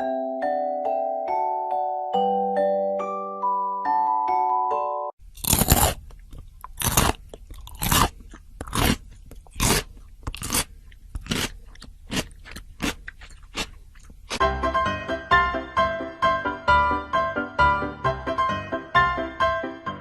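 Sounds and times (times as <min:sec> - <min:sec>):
crunchy food chewing: 0:05.2 - 0:14.4.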